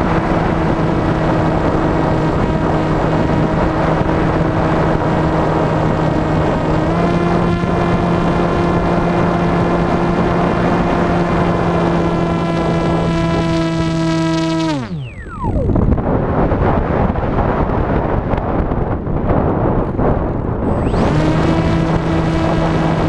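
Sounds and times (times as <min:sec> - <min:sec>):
model plane motor and propeller: 0:00.0 - 0:17.6, 0:20.0 - 0:23.0.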